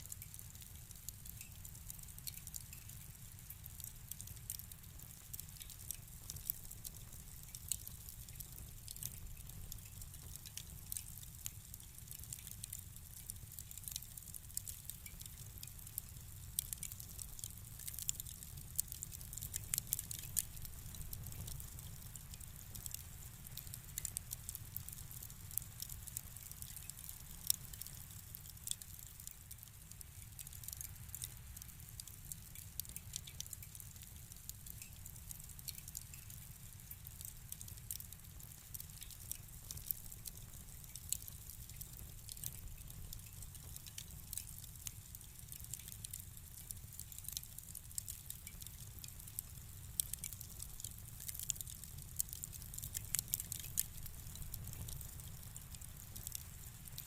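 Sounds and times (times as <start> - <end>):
wood fire crackling: 0.0 - 57.0.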